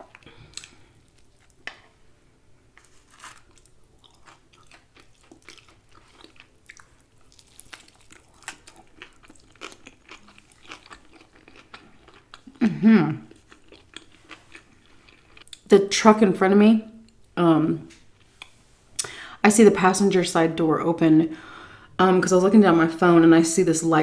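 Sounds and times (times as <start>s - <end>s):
person chewing crunchy food: 2.8s - 15.7s.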